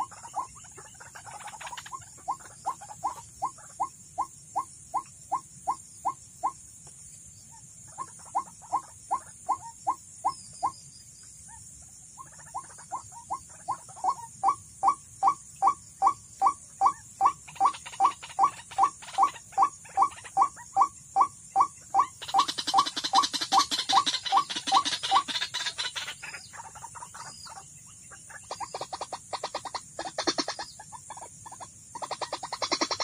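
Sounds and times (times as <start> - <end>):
waterhen calling: 12.6 - 27.6.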